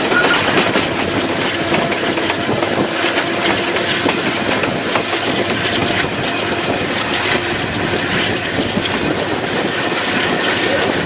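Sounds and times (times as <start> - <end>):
train rumbling on track: 0.0 - 11.0
wheels clattering over rails: 0.0 - 11.0.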